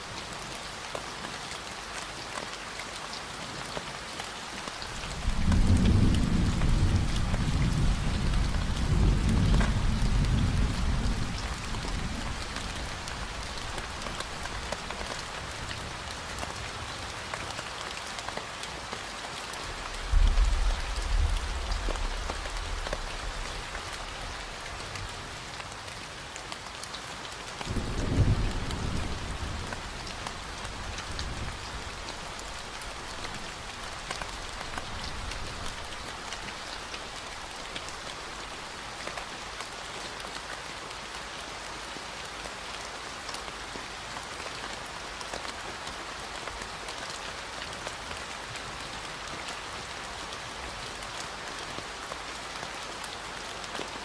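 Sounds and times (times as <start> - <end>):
steady rain: 0.0 - 54.0
low thunder rolls: 20.0 - 23.2.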